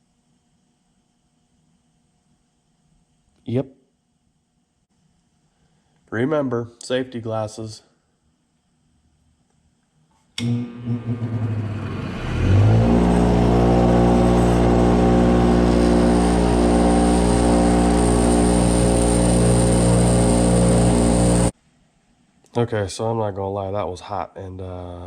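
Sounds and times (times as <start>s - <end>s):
electric grinder grinding metal: 10.6s - 21.5s.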